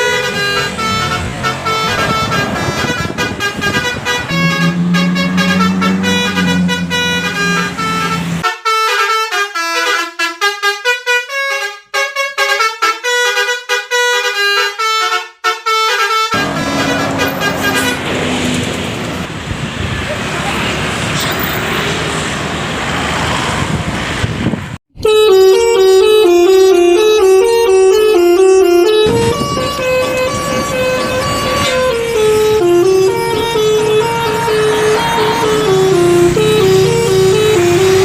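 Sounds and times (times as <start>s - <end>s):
engine noise: 0.0s - 8.4s, 16.3s - 38.0s
street noise: 0.0s - 8.4s, 16.3s - 38.0s
multi-tone bus horn melody: 0.0s - 19.3s, 24.9s - 38.0s.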